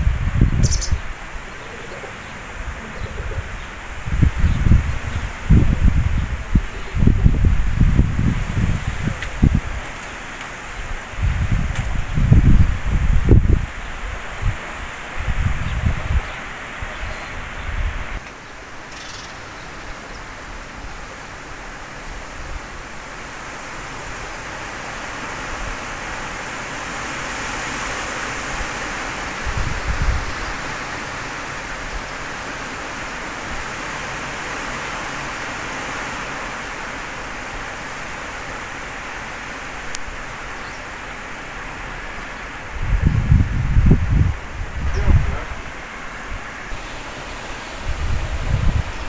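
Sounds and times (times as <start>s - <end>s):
strong wind rushing: 0.0s - 10.0s, 10.7s - 18.2s, 29.4s - 30.6s, 41.7s - 49.0s
wind buffeting microphone: 0.0s - 18.2s, 28.5s - 31.3s, 41.6s - 49.0s.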